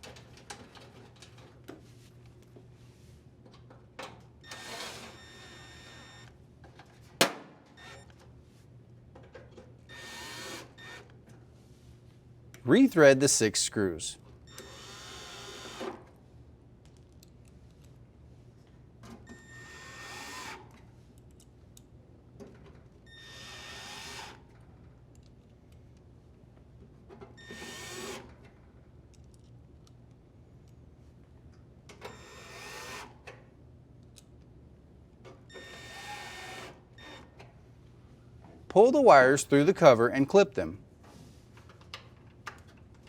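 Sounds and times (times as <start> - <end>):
cordless drill driving screws: 4.5 - 6.3, 9.9 - 11.0, 14.5 - 16.0, 19.4 - 20.6, 23.1 - 24.4, 27.4 - 28.2, 32.1 - 33.1, 35.6 - 37.3.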